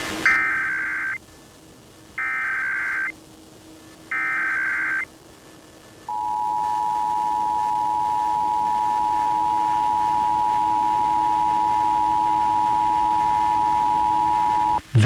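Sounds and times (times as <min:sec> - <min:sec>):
buzzy digital data tones: 0:00.2 - 0:01.2, 0:02.2 - 0:03.2, 0:04.1 - 0:05.1, 0:06.1 - 0:15.0
two-tone attention signal: 0:06.1 - 0:14.8.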